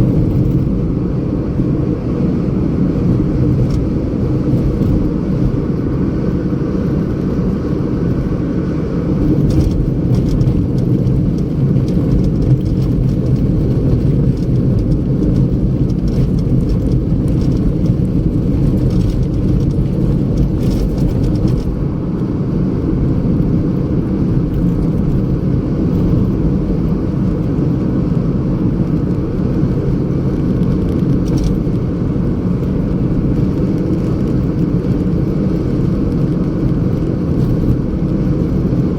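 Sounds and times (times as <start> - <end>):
car engine rumbling: 0.0 - 38.9.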